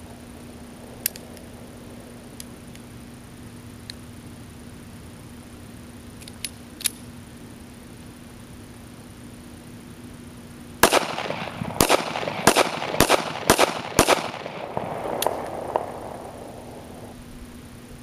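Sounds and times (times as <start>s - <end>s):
pistol shots: 10.8s - 17.1s.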